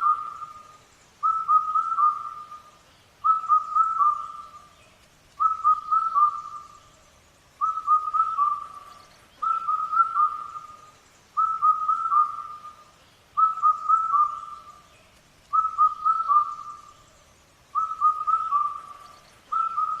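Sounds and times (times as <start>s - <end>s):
bird calling with whistled notes: 0.0s - 20.0s.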